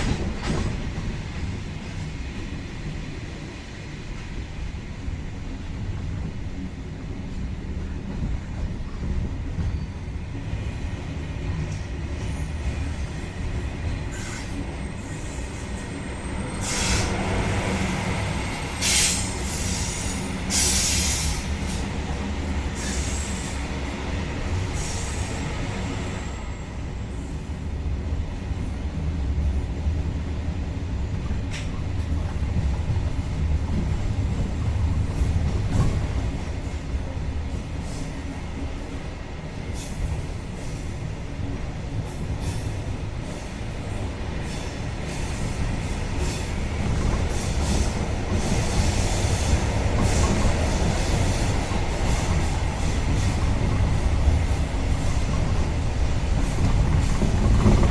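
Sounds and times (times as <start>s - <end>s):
train wheels rumbling on track: 0.0s - 57.9s.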